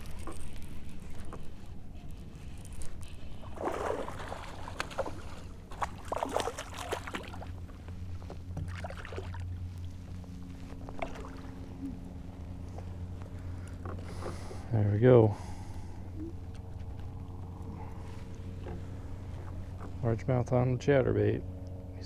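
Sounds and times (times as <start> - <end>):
water splashing around a kayak: 0.0 - 14.5
low steady hum: 0.0 - 22.0.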